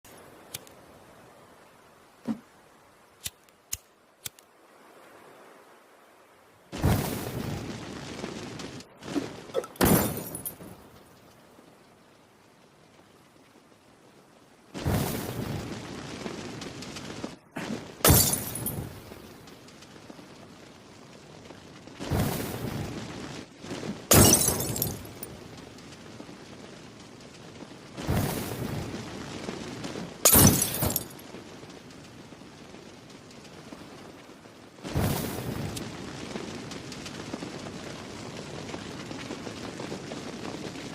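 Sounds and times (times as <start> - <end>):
faint steady hiss: 0.1 - 40.9
glass bottle shattering: 9.6 - 10.6, 18.1 - 18.8, 24.1 - 25.1, 30.3 - 31.1.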